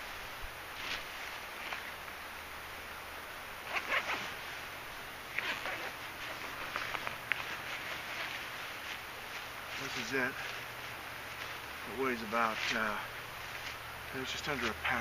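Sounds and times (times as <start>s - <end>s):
rustling and small clicks: 5.4s - 10.6s.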